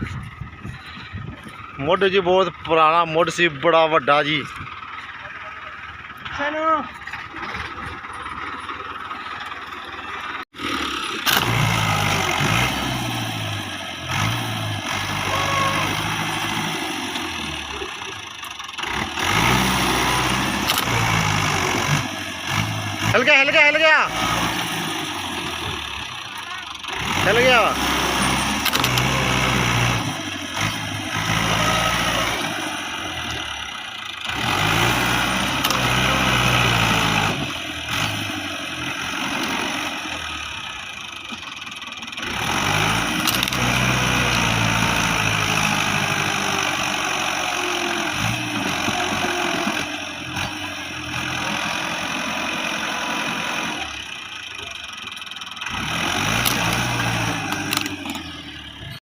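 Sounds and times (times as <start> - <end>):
tractor diesel engine revving: 0.0 - 59.0.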